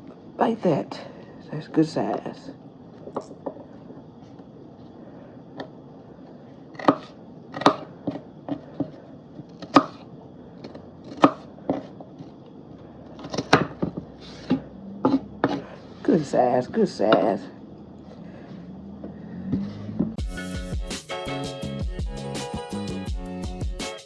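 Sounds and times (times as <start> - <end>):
knife chopping on cutting board: 6.8 - 7.9, 9.6 - 10.0, 11.1 - 11.9, 14.4 - 15.7.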